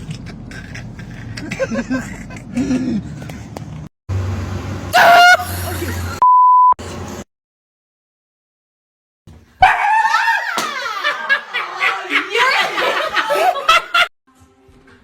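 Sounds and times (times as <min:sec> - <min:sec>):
censor bleep: 0:06.2 - 0:06.8.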